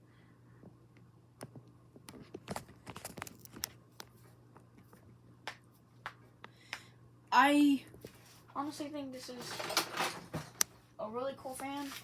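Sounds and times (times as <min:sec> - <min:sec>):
ceiling fan humming: 0:00.0 - 0:12.0
irregular clicks and crackles: 0:00.9 - 0:05.0.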